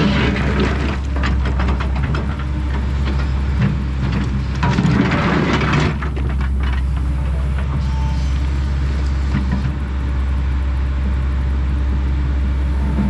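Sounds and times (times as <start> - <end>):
knocks and clatter: 0.0 - 6.8
excavator engine running: 0.0 - 13.0.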